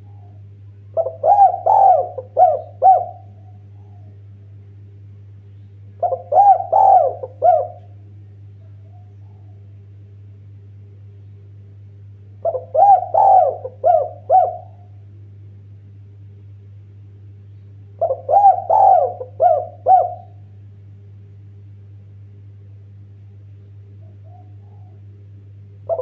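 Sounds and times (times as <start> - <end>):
dove cooing: 0.0 - 4.3, 6.0 - 8.0, 8.6 - 9.8, 12.4 - 15.0, 18.0 - 20.4, 24.0 - 25.1
steady low hum: 0.0 - 26.0.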